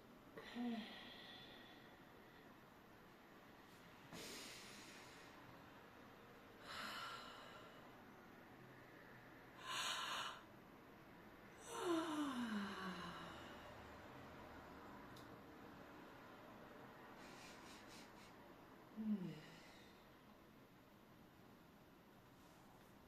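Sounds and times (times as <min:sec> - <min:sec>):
person breathing deeply: 0:04.1 - 0:05.5, 0:09.6 - 0:10.5.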